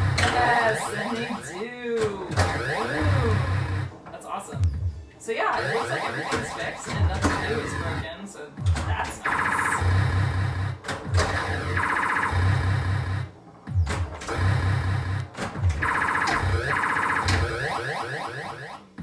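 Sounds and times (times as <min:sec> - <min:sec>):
pinball electronic sound effects: 0:00.0 - 0:01.7, 0:02.3 - 0:04.0, 0:05.5 - 0:08.1, 0:09.2 - 0:13.3, 0:14.2 - 0:18.9.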